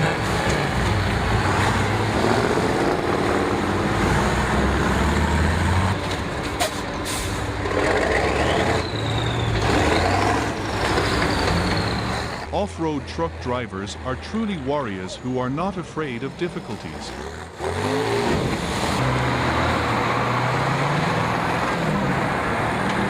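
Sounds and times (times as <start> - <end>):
truck engine under load: 0.0 - 23.0
high squeal: 8.2 - 12.4.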